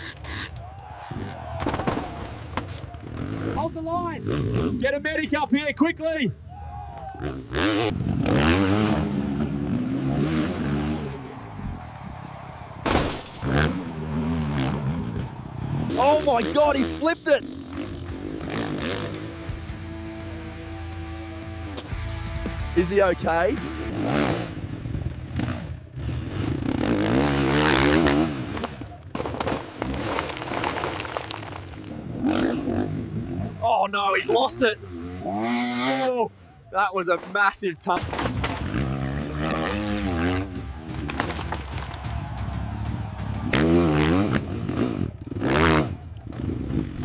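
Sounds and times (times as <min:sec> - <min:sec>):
thuds and scraping: 0:01.6 - 0:03.3, 0:12.8 - 0:13.9, 0:28.0 - 0:32.0, 0:37.2 - 0:39.2, 0:40.6 - 0:44.4
dirt bike engine revving hard: 0:07.2 - 0:11.6, 0:23.6 - 0:28.7, 0:34.5 - 0:36.2, 0:38.6 - 0:40.8, 0:43.4 - 0:47.0.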